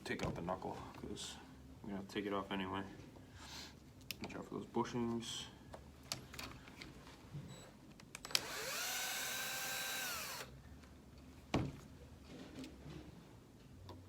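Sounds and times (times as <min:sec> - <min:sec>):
cordless drill spinning: 0:08.2 - 0:10.5.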